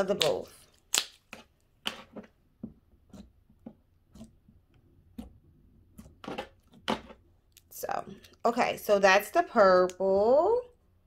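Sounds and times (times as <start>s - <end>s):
hands squeezing sticky slime: 0.0s - 2.1s.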